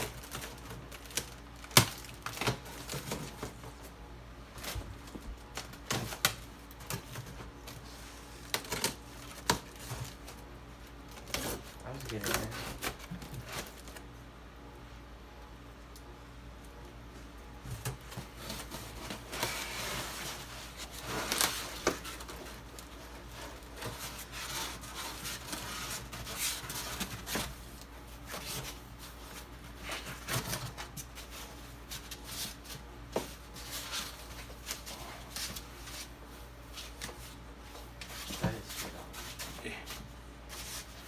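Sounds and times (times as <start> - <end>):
packaging rustling and tearing: 0.0 - 3.7, 4.6 - 14.1, 17.8 - 32.8.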